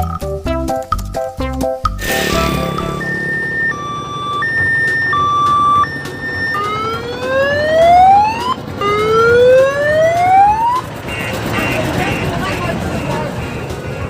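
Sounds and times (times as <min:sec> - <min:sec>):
electronic siren wailing: 0:02.0 - 0:11.4.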